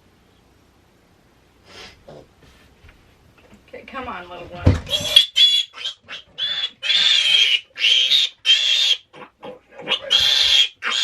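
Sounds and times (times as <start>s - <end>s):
piglet squealing: 4.9s - 11.0s.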